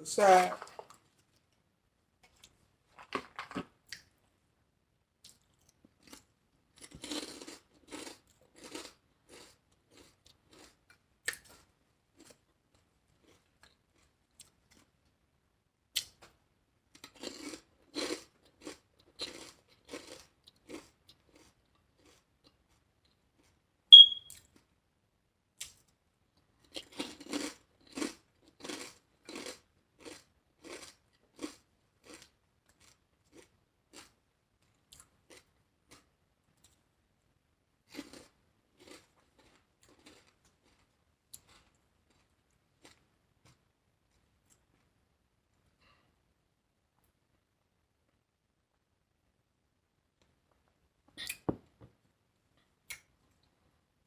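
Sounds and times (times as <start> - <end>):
person chewing crunchy food: 5.2 - 15.0, 17.0 - 22.8, 26.6 - 36.8, 37.9 - 44.9
sharp high squeak: 24.0 - 24.3.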